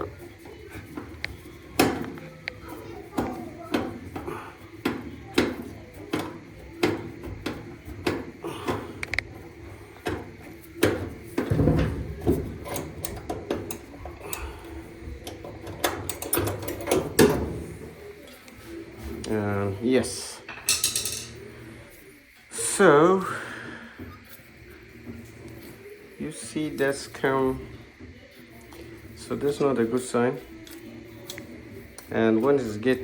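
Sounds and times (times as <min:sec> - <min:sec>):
metal parts knocking and clicking: 0:20.5 - 0:21.4.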